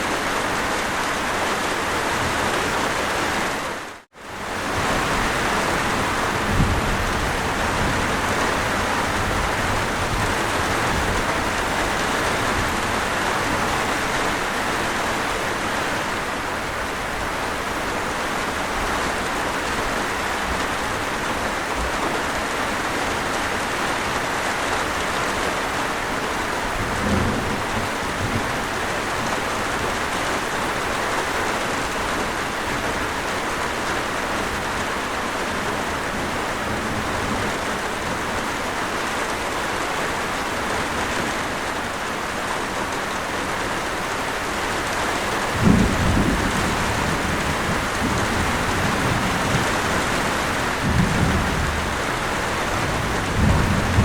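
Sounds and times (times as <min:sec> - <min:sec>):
steady rain hiss: 0:00.0 - 0:54.0.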